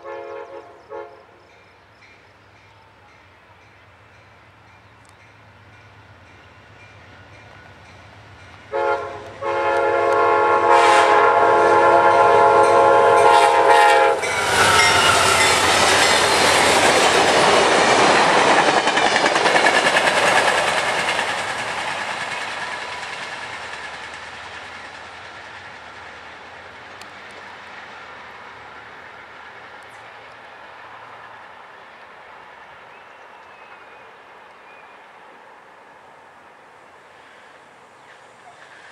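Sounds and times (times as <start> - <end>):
train horn blasts: 0.0 - 1.4, 8.7 - 15.7
train wheels clacking: 11.9 - 27.6.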